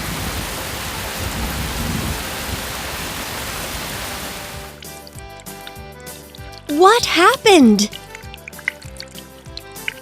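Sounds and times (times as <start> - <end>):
heavy rain falling: 0.0 - 4.6.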